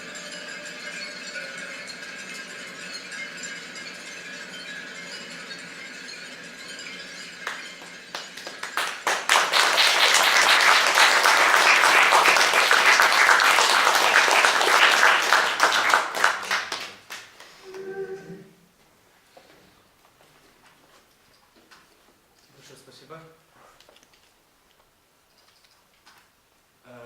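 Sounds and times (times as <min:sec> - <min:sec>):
audience applause: 0:07.4 - 0:17.4.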